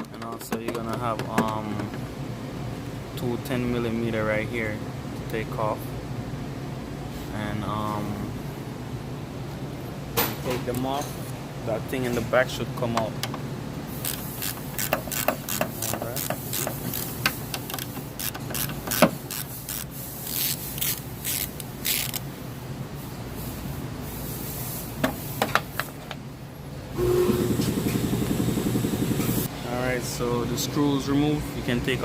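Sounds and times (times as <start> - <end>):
hand tool clicking on bolts: 14.0 - 19.8.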